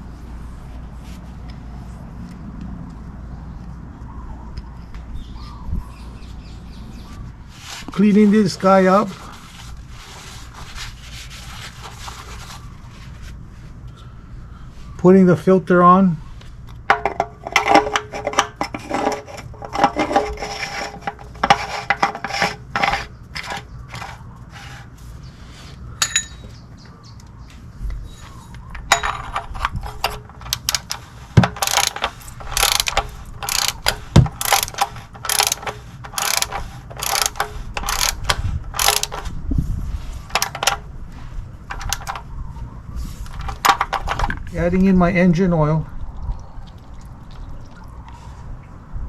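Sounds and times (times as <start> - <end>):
ratchet clicking: 28.9 - 39.3.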